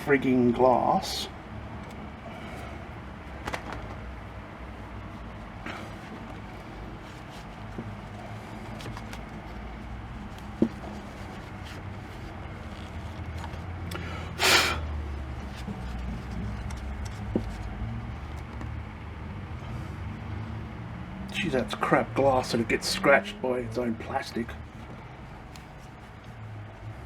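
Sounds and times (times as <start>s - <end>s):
low steady hum: 0.0s - 27.0s
plastic scraping: 1.7s - 19.0s.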